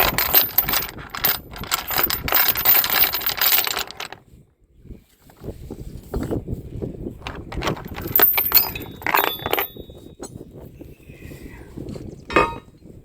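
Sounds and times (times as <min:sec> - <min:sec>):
metal chain clinking: 0:00.0 - 0:04.2, 0:07.3 - 0:10.4.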